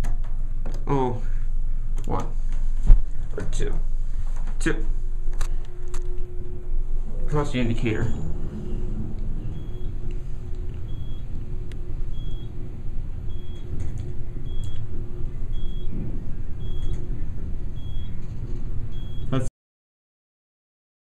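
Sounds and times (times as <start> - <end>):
elevator rumble and hum: 0.0 - 19.5
short high electronic beep: 9.5 - 10.0.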